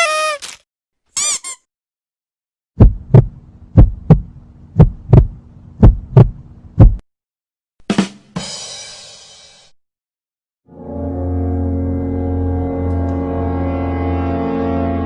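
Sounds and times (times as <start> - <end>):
heartbeat thumps: 2.8 - 7.0.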